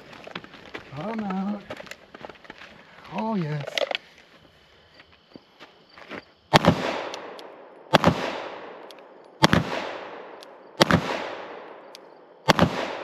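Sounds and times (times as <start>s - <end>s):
gunshots with long echo: 6.5s - 13.0s.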